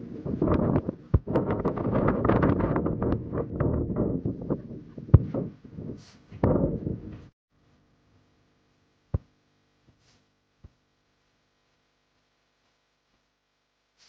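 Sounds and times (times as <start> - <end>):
wind buffeting microphone: 0.0 - 7.3.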